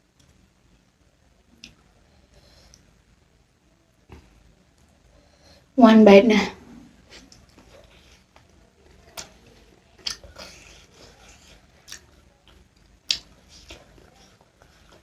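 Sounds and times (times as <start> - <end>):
chewing and biting: 7.1 - 15.0
sharp wet clicks: 9.1 - 11.2, 11.8 - 14.0.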